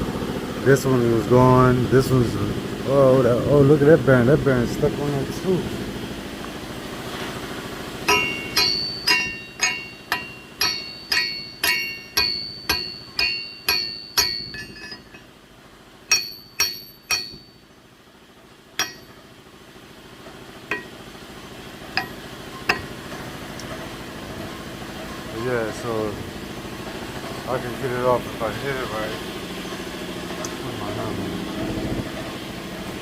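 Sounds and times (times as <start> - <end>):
metal-on-metal strikes: 8.0 - 15.3, 16.1 - 17.7, 18.8 - 19.3, 20.7 - 21.2, 21.9 - 23.2.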